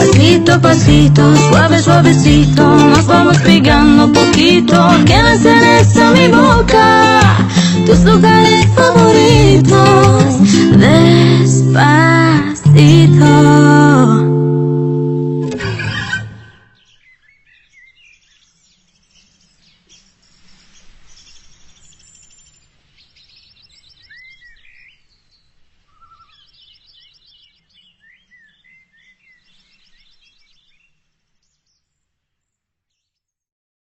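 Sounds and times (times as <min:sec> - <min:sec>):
small birds chirping and trilling: 0:15.9 - 0:33.3.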